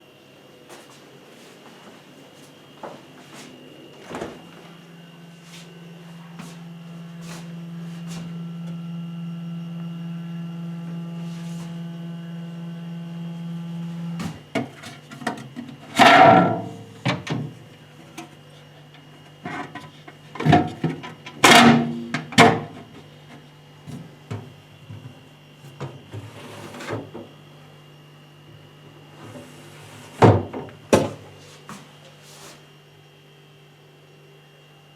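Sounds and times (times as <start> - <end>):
fridge-freezer humming: 0.0 - 34.9.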